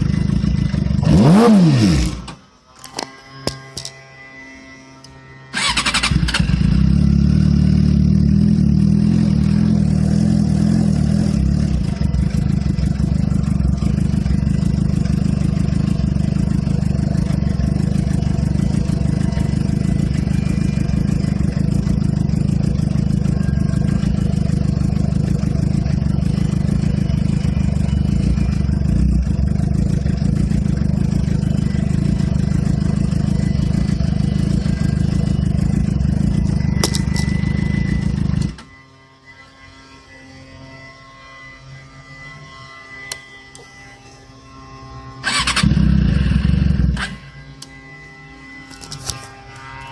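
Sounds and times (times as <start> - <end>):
motorcycle engine starting and running: 0.0 - 4.0, 5.5 - 38.8, 45.2 - 47.7.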